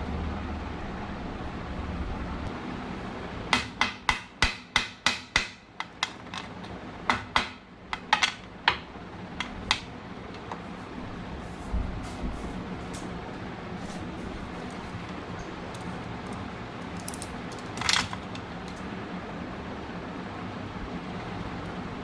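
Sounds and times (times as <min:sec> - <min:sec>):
low steady hum: 0:00.0 - 0:22.0
small hard objects tapping: 0:15.7 - 0:18.8.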